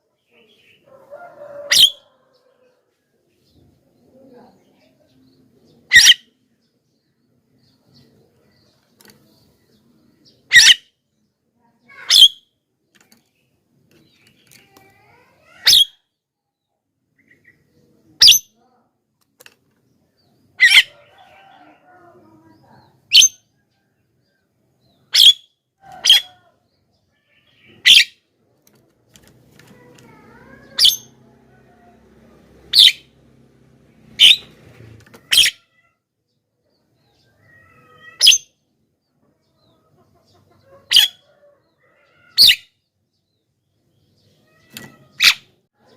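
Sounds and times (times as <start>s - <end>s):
soft bird chattering: 4.3s - 6.3s, 7.9s - 10.9s, 22.4s - 23.4s, 27.2s - 28.3s, 29.2s - 31.2s, 39.7s - 41.4s
myna calling: 25.0s - 26.6s, 34.0s - 36.0s.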